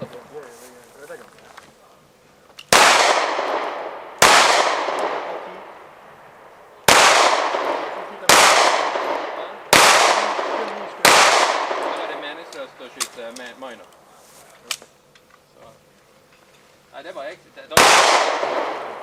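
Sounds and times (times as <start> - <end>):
pistol shots with echo: 2.7 - 6.0, 6.8 - 12.5, 17.7 - 19.0.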